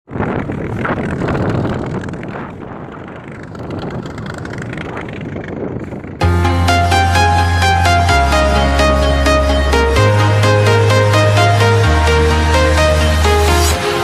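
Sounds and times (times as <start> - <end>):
wind rushing over microphone: 0.0 - 7.6
electronic music with heavy bass: 6.2 - 14.0.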